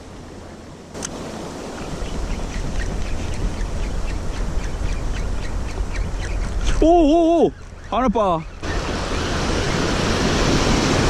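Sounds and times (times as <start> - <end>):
wind buffeting microphone: 0.0 - 11.0
crashing surf: 8.6 - 11.0.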